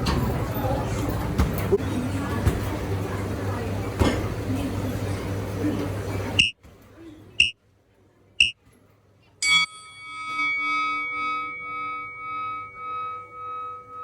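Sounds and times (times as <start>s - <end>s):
bell ringing: 9.4s - 14.0s.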